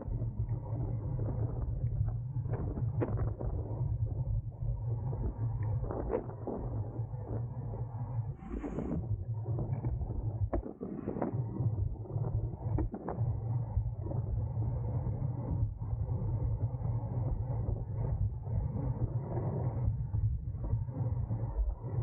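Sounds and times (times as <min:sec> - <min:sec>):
low hum: 0:00.0 - 0:22.0.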